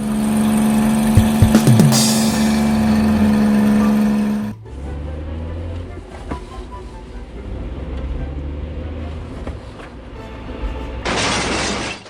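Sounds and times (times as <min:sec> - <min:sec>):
background music: 0:01.1 - 0:09.4, 0:10.0 - 0:11.1
loud rushing noise: 0:01.2 - 0:03.6.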